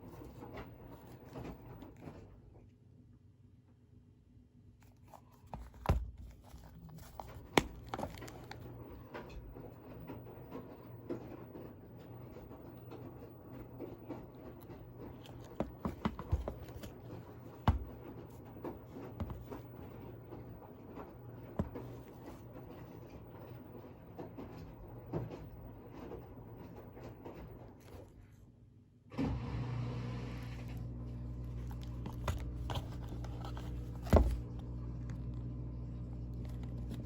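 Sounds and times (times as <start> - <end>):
packaging rustling and scraping: 4.8 - 10.2, 12.4 - 23.0, 31.3 - 35.4, 36.2 - 37.0.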